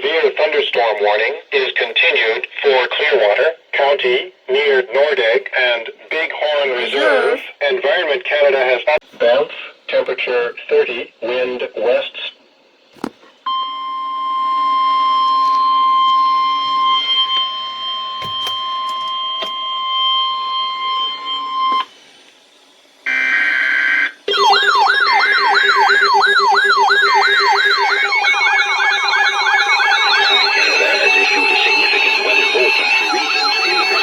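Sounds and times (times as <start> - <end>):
second alarm pattern: 6.8 - 7.5, 23.1 - 34.0
electronic siren alarm wailing: 23.0 - 34.0.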